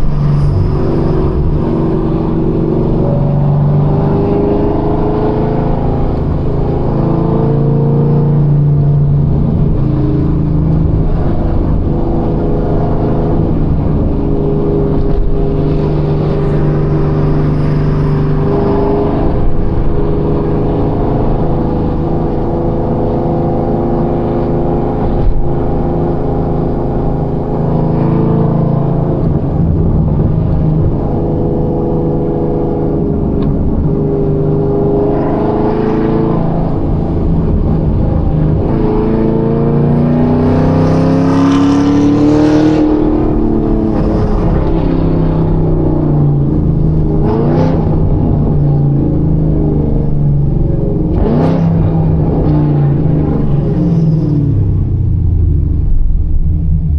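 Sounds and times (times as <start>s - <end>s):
car engine revving while driving: 0.0s - 56.9s.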